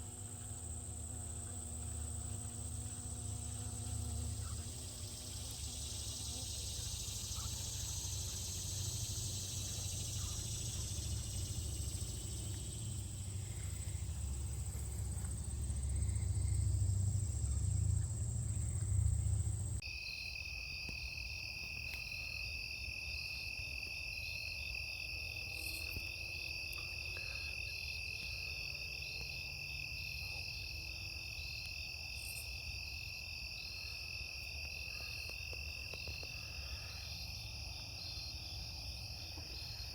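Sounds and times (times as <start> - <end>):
fast pulsing insect trill: 0.2 - 20.3
cricket-like trilling: 0.3 - 24.8
low rumble: 13.0 - 19.8.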